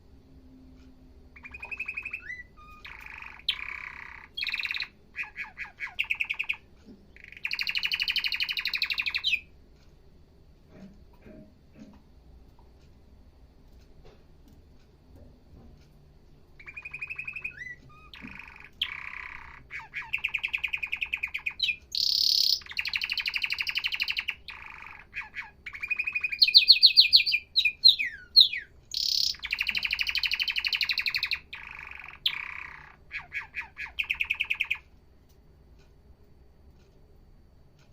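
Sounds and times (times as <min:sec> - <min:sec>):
canary singing: 0:01.2 - 0:09.6, 0:16.5 - 0:35.0.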